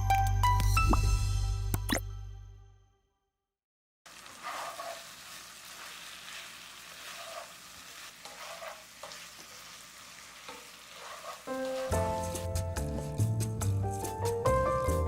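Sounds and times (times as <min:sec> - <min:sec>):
chicken sizzling in a pan: 0:04.1 - 0:13.1
utensil scraping a pan: 0:04.2 - 0:05.4, 0:06.9 - 0:09.7, 0:10.4 - 0:13.3.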